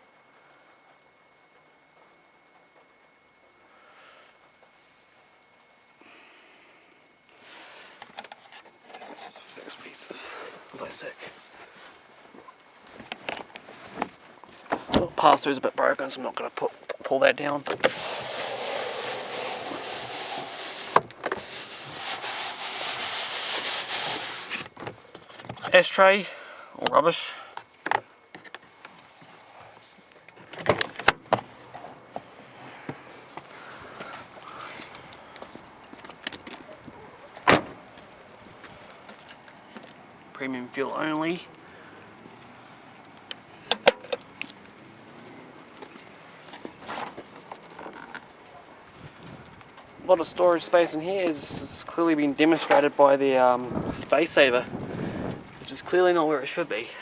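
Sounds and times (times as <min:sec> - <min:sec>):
short rustle: 0:17.5 - 0:25.7, 0:31.3 - 0:56.8.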